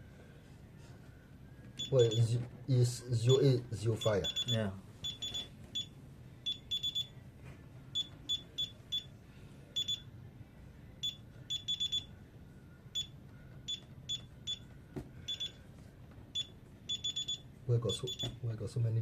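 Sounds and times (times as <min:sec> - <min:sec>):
alarm keypad beeping: 0:01.8 - 0:02.4, 0:03.9 - 0:07.1, 0:08.0 - 0:09.1, 0:09.8 - 0:10.1, 0:11.0 - 0:12.1, 0:12.9 - 0:14.7, 0:15.3 - 0:15.6, 0:16.4 - 0:18.4.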